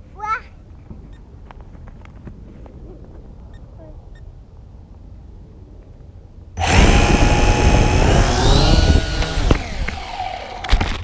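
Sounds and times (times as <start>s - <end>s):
drone motors buzzing whine: 6.6s - 11.0s.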